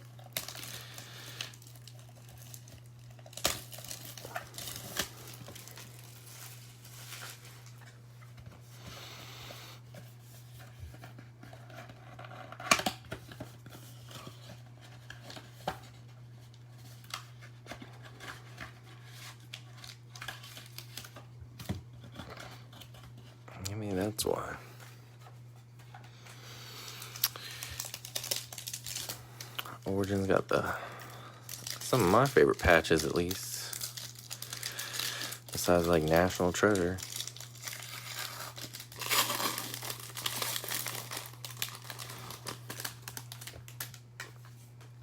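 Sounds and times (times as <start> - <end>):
packaging torn and crinkled: 0.0 - 8.0, 10.5 - 24.6, 26.8 - 44.9
steady low hum: 19.5 - 45.0.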